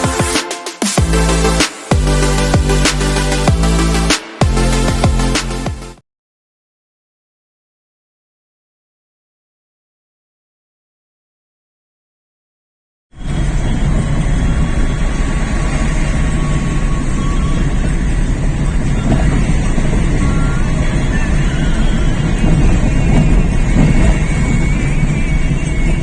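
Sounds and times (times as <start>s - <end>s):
moving vehicle rumble: 13.2s - 26.0s.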